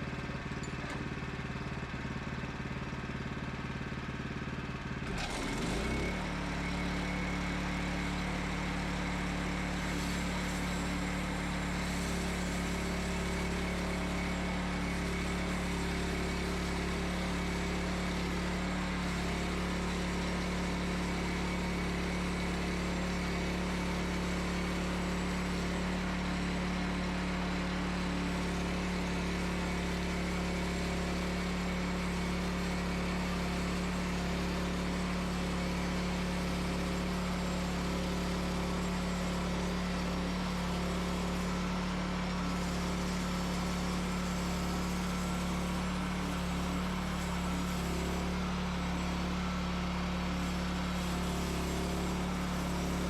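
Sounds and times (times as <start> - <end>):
sawmill engine humming: 0.0 - 53.0
band saw blade cutting log: 5.1 - 20.2, 42.5 - 53.0.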